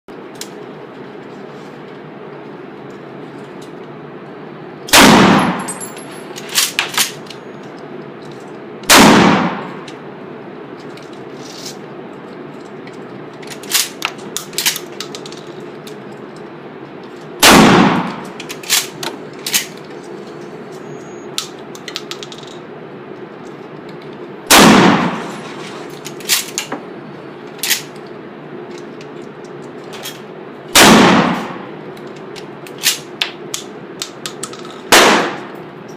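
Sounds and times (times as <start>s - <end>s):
shotgun shots: 4.9s - 5.7s, 8.9s - 9.8s, 17.4s - 18.3s, 24.5s - 25.3s, 30.7s - 31.7s, 34.9s - 35.6s.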